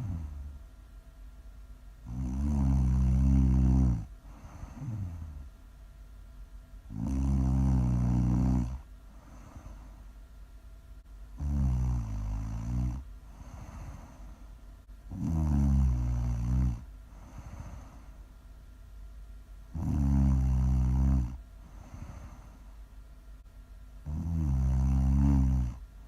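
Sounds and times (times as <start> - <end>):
loud low snoring: 0.0 - 0.6, 2.0 - 5.5, 6.9 - 9.8, 11.4 - 14.2, 15.1 - 18.1, 19.7 - 22.6, 24.0 - 25.8
quiet breathing out: 0.0 - 0.6, 3.1 - 5.5, 7.9 - 10.2, 13.2 - 14.6, 17.0 - 18.3, 21.6 - 22.9.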